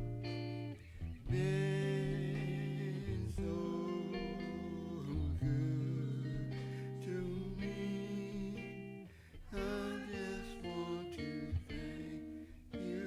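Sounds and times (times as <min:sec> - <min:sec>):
instrumental music with held chords: 0:00.0 - 0:13.0.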